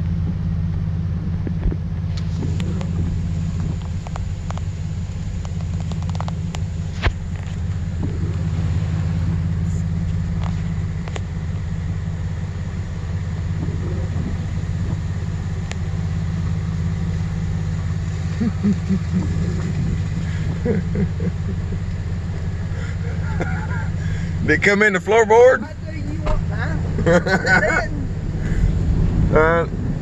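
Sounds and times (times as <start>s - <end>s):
vehicle engine humming: 0.0s - 30.0s
faint voices: 13.4s - 16.2s.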